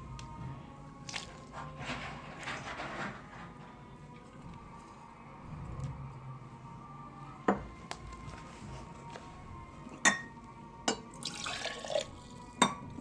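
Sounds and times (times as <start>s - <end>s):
hot water pouring: 1.0s - 3.0s, 11.1s - 12.7s.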